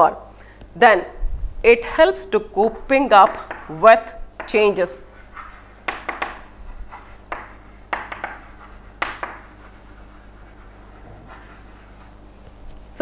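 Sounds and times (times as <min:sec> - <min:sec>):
low steady hum: 0:00.0 - 0:13.0
pen scratching strokes: 0:02.6 - 0:12.2.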